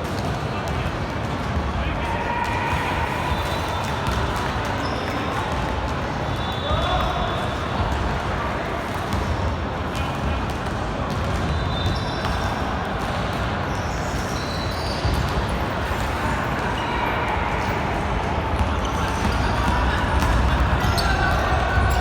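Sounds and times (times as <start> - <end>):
sneakers squeaking: 3.3 - 5.6, 11.1 - 22.0
basketball bouncing on court: 8.9 - 16.1, 18.3 - 22.0.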